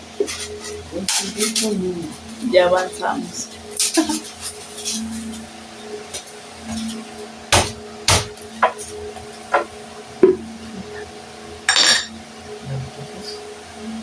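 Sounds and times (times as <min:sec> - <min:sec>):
sharp knocks on wood: 0:07.5 - 0:08.8.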